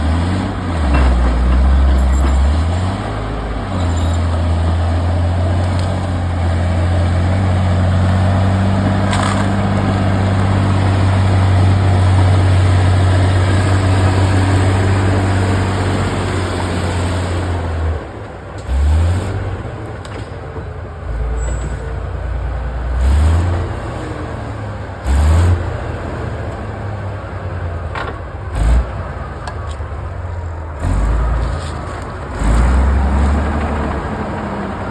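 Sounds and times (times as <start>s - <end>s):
heavy diesel engine revving: 0.0s - 19.8s, 22.8s - 26.7s, 30.7s - 34.9s.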